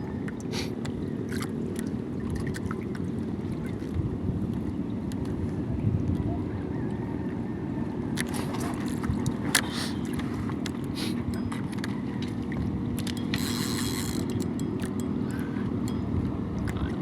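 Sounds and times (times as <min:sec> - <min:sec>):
boat engine humming: 0:07.1 - 0:17.0.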